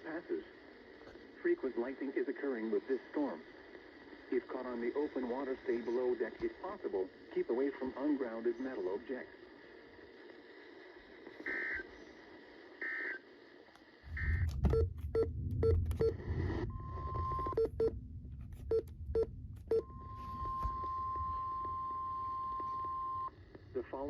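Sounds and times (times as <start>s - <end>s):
crackling radio static: 0.0s - 24.0s
steady warning alarm tone: 14.1s - 24.0s.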